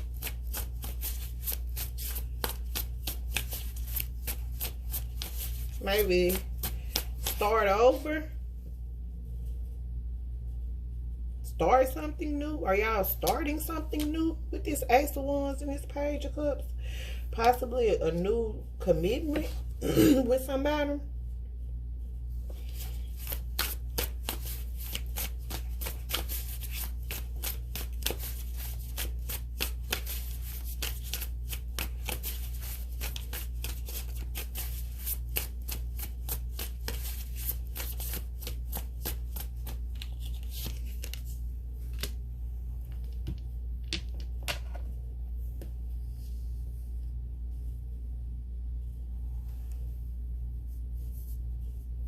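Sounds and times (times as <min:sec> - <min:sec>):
cards being shuffled: 0:00.0 - 0:08.0, 0:22.5 - 0:42.2
steady low hum: 0:00.0 - 0:52.0.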